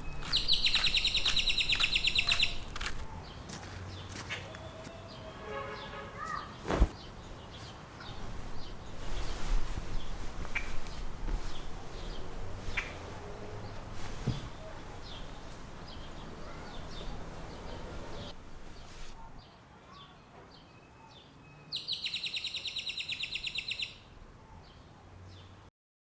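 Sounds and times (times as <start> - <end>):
loud rapid bird trill: 0.0 - 2.8
birds chirping: 0.0 - 3.4, 8.1 - 19.4
steady outdoor hiss: 0.0 - 4.1, 4.7 - 19.9.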